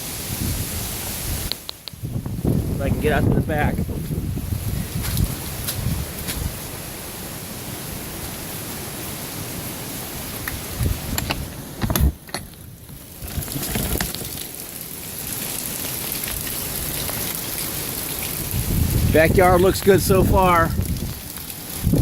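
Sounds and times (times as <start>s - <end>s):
wind rumbling on microphone: 0.0s - 7.2s, 10.1s - 14.4s, 16.2s - 22.0s
storm wind: 0.0s - 14.4s, 16.2s - 22.0s
rain: 0.0s - 22.0s.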